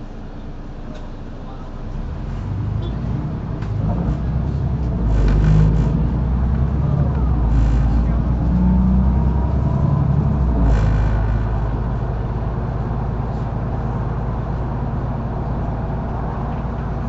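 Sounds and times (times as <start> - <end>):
bus engine from inside: 0.0 - 17.0.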